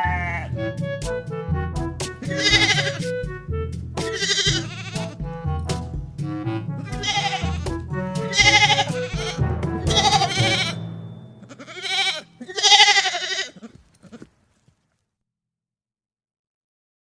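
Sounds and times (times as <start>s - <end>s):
quavering animal bleats: 0.0s - 0.5s, 2.3s - 3.0s, 4.1s - 5.3s, 6.5s - 10.8s, 11.4s - 14.4s
background music with bass line: 0.0s - 12.1s.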